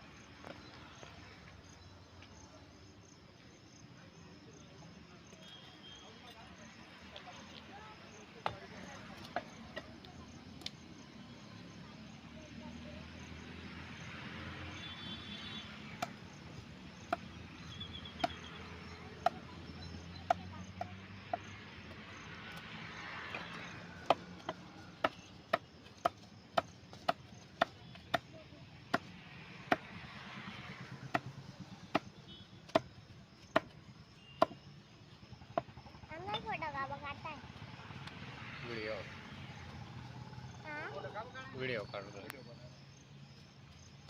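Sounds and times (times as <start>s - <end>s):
sharp chopping strikes: 16.0s - 16.2s, 28.9s - 30.0s, 31.9s - 32.9s, 33.5s - 33.8s.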